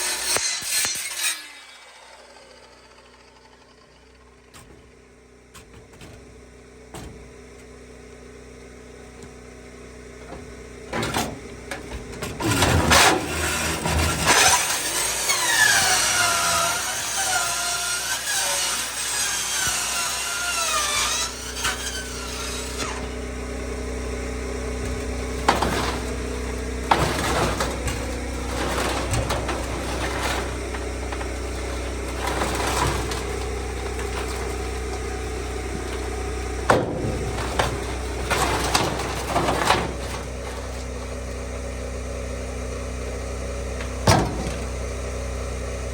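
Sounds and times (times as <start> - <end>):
diesel engine running: 2.3 - 45.9
metal-on-metal screech: 12.2 - 23.4, 24.8 - 41.2.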